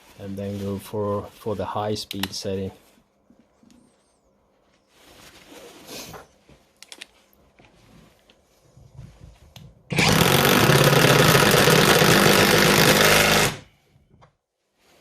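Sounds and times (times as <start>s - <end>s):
impact driver hammering: 9.9s - 13.6s.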